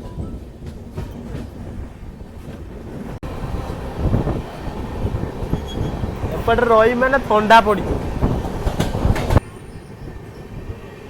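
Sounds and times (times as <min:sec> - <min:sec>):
train rumbling on track: 0:00.0 - 0:11.0
train wheels knocking: 0:03.7 - 0:09.4.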